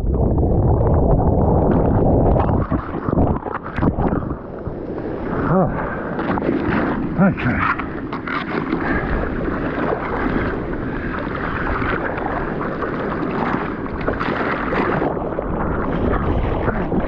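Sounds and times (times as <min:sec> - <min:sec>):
seawater splashing and rushing: 0:00.0 - 0:17.0.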